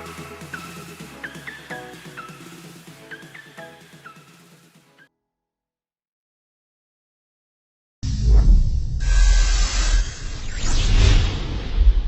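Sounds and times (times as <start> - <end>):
electronic music with synth: 0.0 - 5.1.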